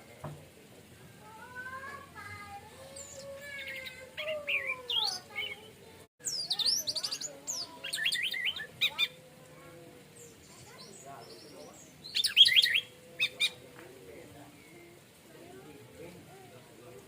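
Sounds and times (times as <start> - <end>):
thrush singing whistling song: 6.2 - 9.2, 10.3 - 13.6.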